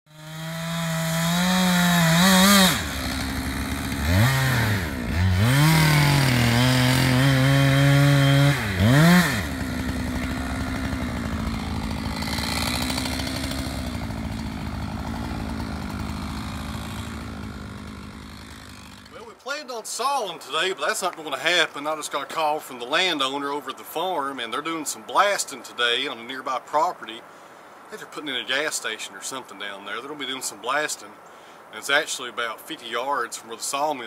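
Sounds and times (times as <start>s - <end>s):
chainsaw engine revving: 0.1s - 19.2s.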